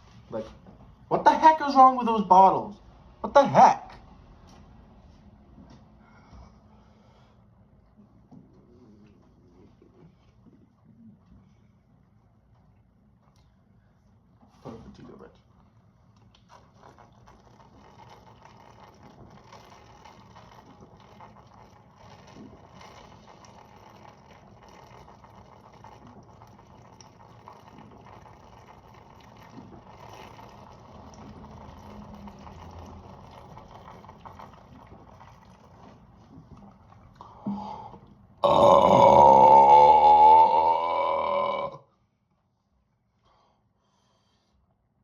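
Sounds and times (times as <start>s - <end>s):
person gulping soda: 15.3s - 41.9s
loud long burp: 38.4s - 41.9s.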